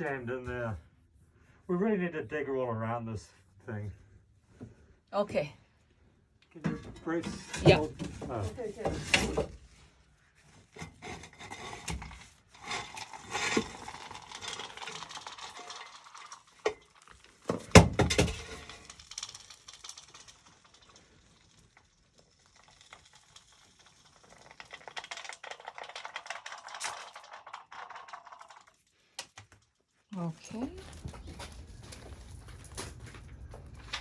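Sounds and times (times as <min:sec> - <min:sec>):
gravel scraping and clattering: 0:06.9 - 0:34.0
gravel rattling: 0:11.8 - 0:28.8, 0:30.2 - 0:34.0.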